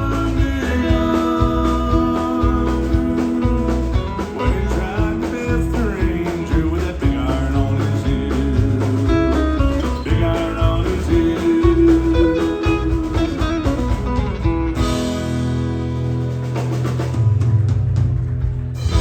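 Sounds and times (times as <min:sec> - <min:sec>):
person singing: 0:00.0 - 0:13.5
country band playing: 0:00.0 - 0:19.0
guitar: 0:00.0 - 0:19.0.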